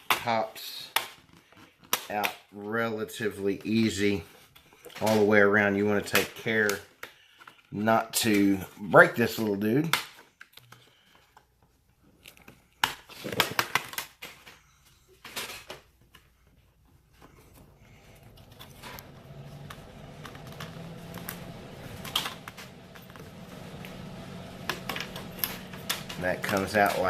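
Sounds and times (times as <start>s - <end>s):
low hum: 17.0s - 27.0s.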